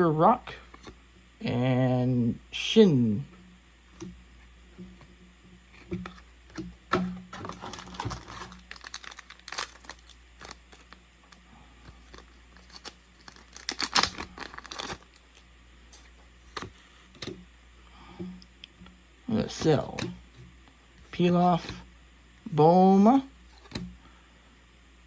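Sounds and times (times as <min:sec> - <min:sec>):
foil wrapper crinkling and tearing: 0:07.3 - 0:15.4.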